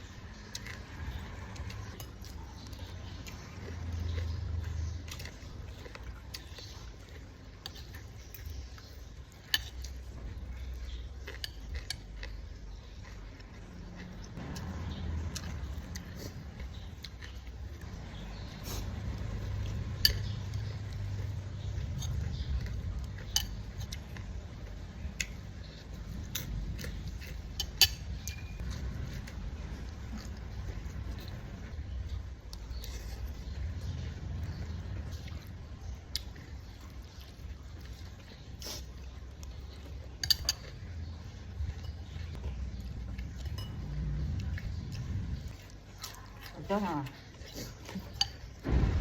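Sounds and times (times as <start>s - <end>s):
low steady hum: 0.0s - 49.0s
cutlery clinking against dishes: 27.2s - 28.7s, 40.2s - 40.8s, 47.5s - 48.6s
low rumble: 41.0s - 46.0s, 48.6s - 49.0s.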